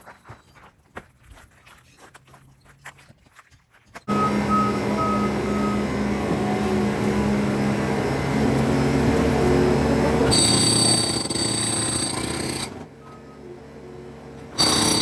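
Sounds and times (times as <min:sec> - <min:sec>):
diesel engine running hard: 0:04.1 - 0:15.0
high metallic squeal: 0:10.2 - 0:13.4.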